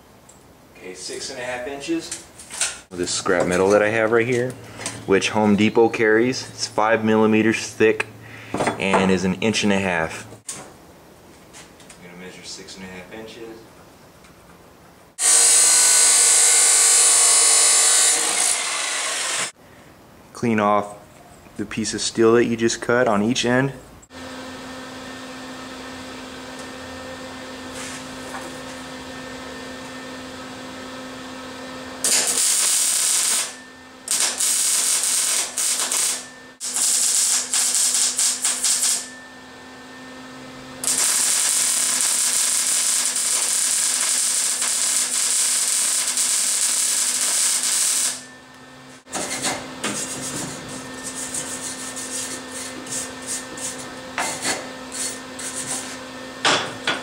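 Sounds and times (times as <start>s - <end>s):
grinder grinding metal: 15.2s - 19.5s, 32.1s - 39.2s, 40.8s - 48.3s, 49.2s - 56.0s
grinder humming: 15.2s - 19.6s, 24.1s - 57.0s
grinder scraping: 15.2s - 19.6s, 32.0s - 39.2s, 40.8s - 48.3s, 49.0s - 56.0s.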